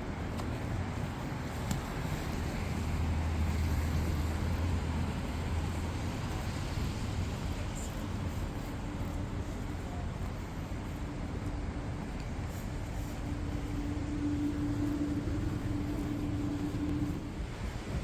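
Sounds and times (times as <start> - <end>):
traffic hiss: 0.0 - 18.0
vehicle engine rumble: 0.0 - 18.0.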